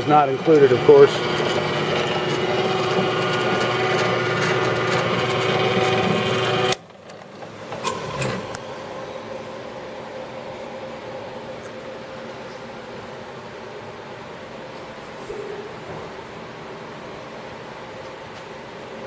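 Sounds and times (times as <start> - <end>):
drill press motor hum: 0.0 - 14.0.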